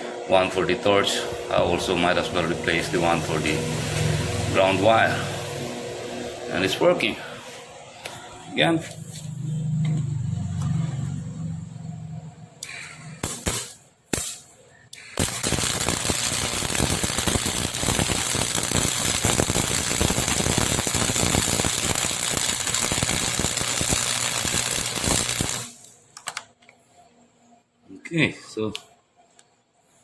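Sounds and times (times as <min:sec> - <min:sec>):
low hum: 0:01.3 - 0:13.8
welding arc crackling: 0:12.6 - 0:26.4.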